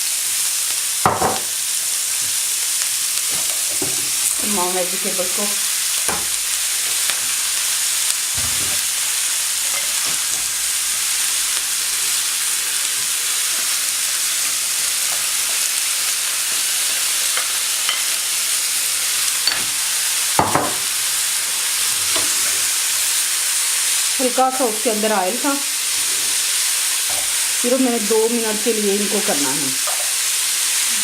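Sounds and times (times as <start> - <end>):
vegetables sizzling in a pan: 0.0 - 31.0.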